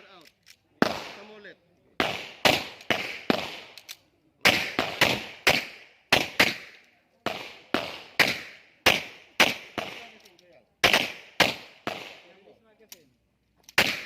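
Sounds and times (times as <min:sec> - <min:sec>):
pistol shots: 0:00.8 - 0:01.4, 0:02.0 - 0:12.4, 0:13.7 - 0:14.0.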